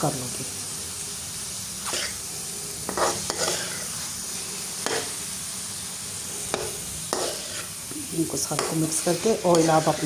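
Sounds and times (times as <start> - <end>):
food sizzling in hot oil: 0.0 - 10.0
utensil scraping a pan: 1.8 - 2.2, 2.9 - 4.0, 6.5 - 7.9, 8.5 - 10.0.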